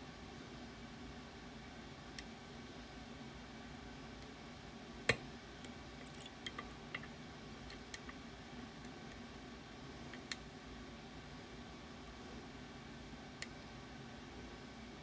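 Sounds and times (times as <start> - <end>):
metal tools clicking on a lock: 6.0 - 7.1.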